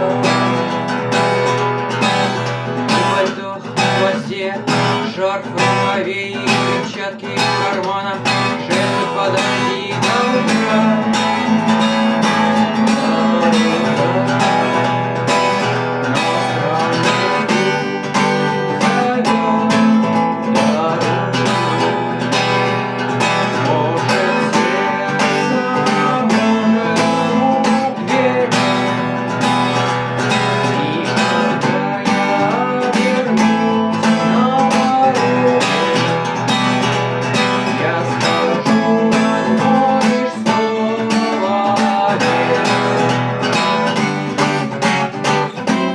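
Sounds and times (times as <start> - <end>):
strummed acoustic guitar: 0.0 - 45.9.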